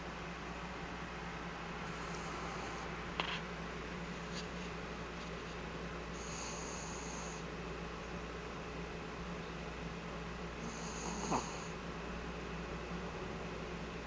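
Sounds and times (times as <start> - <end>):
puppy snoring softly: 1.8 - 2.9, 6.2 - 7.5, 10.6 - 11.8.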